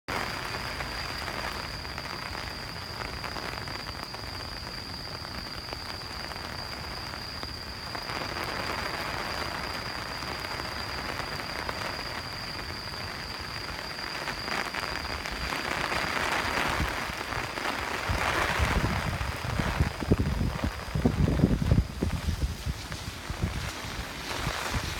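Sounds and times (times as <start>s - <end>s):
heavy rain falling: 0.1s - 24.9s
high steady whine: 0.1s - 24.9s
wind buffeting microphone: 15.1s - 24.9s.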